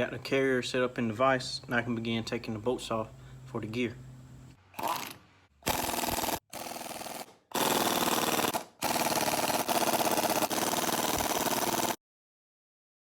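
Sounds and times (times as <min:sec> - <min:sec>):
impact wrench hammering: 0:04.8 - 0:12.0.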